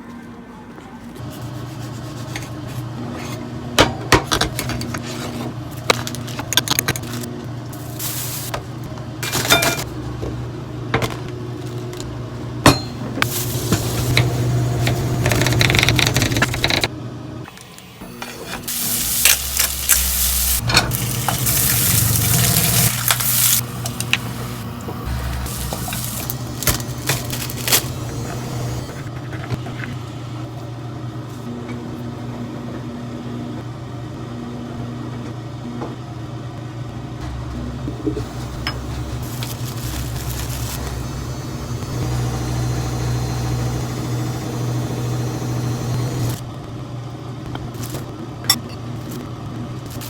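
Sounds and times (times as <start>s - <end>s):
food sizzling: 7.8s - 8.6s, 13.2s - 15.2s, 18.3s - 29.0s, 38.0s - 46.3s
utensils and dishes clinking: 9.2s - 9.9s
steady low hum: 18.0s - 29.2s, 36.9s - 50.0s.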